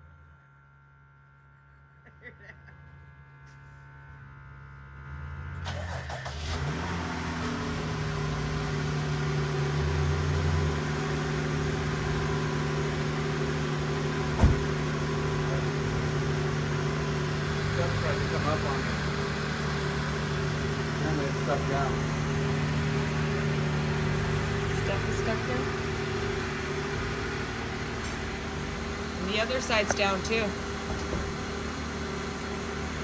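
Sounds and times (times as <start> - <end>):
car engine starting and idling: 5.4 - 33.0
sharp knock: 14.4 - 14.7.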